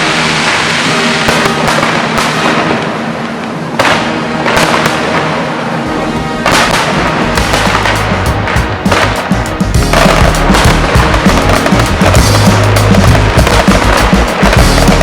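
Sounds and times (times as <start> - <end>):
fireworks bursting and crackling: 0.0 - 15.0
music playing: 5.2 - 15.0.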